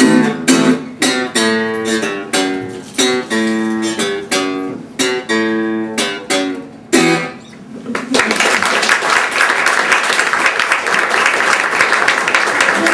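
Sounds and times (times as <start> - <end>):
guitar strumming chords: 0.0 - 7.7
audience applauding: 7.9 - 12.9.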